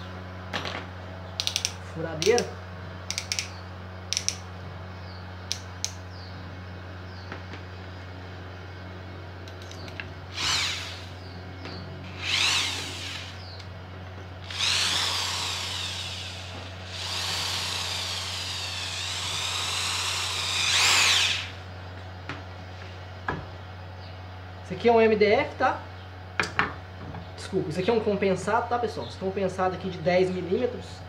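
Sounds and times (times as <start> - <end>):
drill motor whine: 10.3 - 11.2, 12.1 - 13.6, 14.4 - 21.6.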